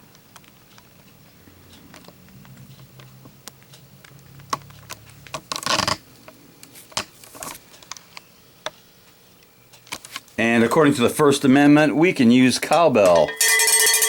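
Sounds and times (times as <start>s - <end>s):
metallic rattle: 12.8s - 14.0s.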